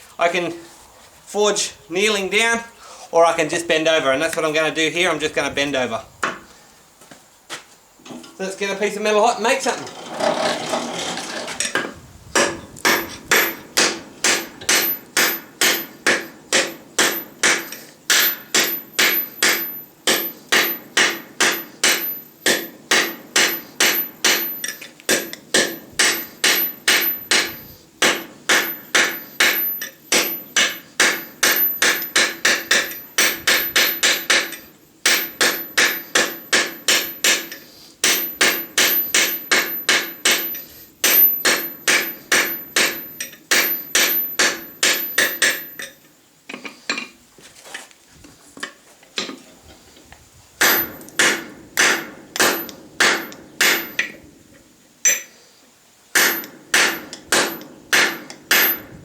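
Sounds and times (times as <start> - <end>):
hammer ringing on steel anvil: 55.1 - 55.3.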